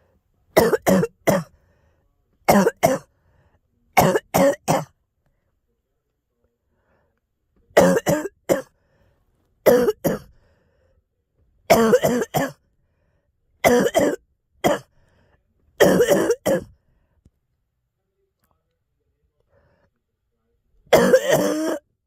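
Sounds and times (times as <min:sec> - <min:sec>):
girl coughing: 0:00.6 - 0:01.5, 0:02.5 - 0:03.1, 0:04.0 - 0:04.9, 0:07.8 - 0:08.7, 0:09.7 - 0:10.3, 0:11.7 - 0:12.6, 0:13.6 - 0:14.9, 0:15.8 - 0:16.7, 0:20.9 - 0:21.8.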